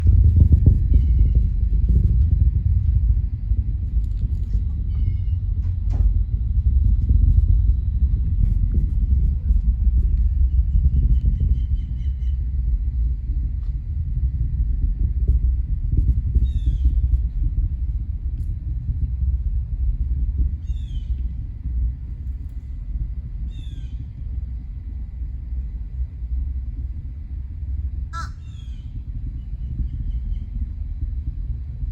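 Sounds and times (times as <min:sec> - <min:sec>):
distant rocket launch roar: 0:00.0 - 0:31.9
bird calling: 0:28.1 - 0:28.9.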